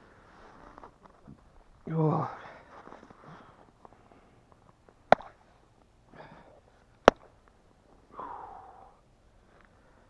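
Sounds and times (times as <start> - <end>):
man breathing hard: 2.4 - 4.5, 6.1 - 6.6, 8.1 - 10.0.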